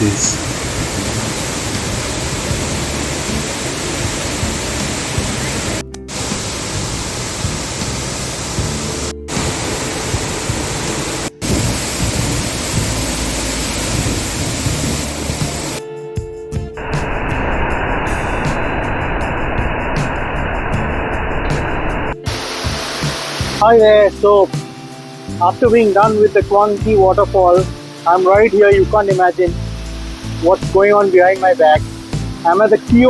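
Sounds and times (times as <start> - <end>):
waterfall rushing: 0.0 - 15.8, 16.8 - 25.1
music: 0.0 - 33.0.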